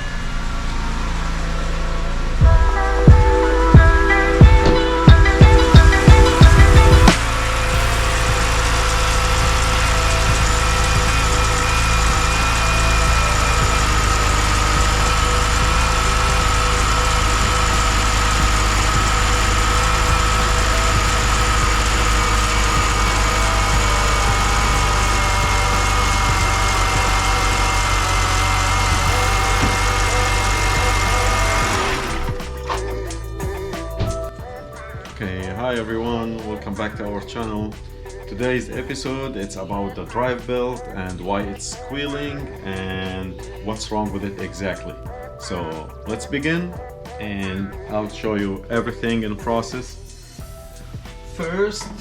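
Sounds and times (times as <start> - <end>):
car engine idling: 0.0 - 35.8
high-pitched belt squeal: 3.4 - 34.3.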